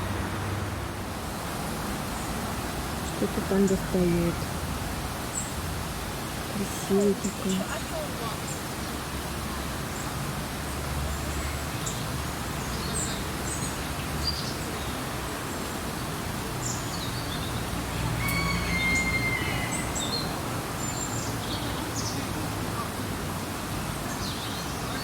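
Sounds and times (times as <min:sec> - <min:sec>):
small birds chirping: 0:06.5 - 0:10.2.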